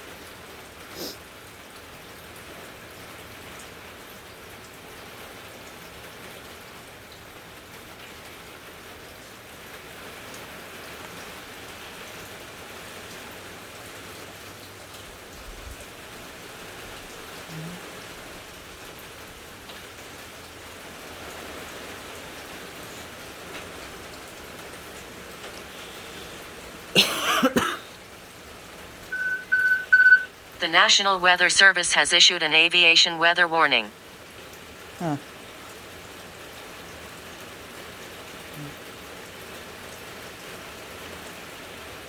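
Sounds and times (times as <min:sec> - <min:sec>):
heavy rain hitting surfaces: 0:00.0 - 0:29.1, 0:34.0 - 0:42.0.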